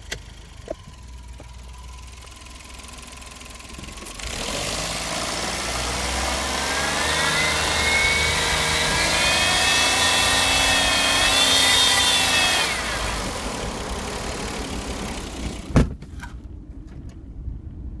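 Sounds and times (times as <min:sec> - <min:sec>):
car accelerating with whine: 0:00.0 - 0:15.8.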